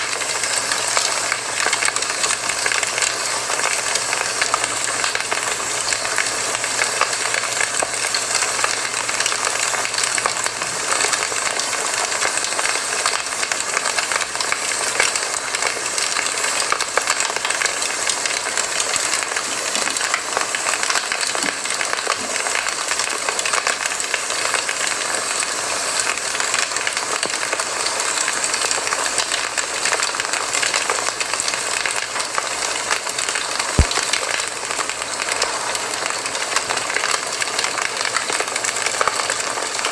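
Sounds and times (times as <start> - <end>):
campfire crackling and hissing: 0.0 - 39.9
loud fire pop: 33.8 - 34.4.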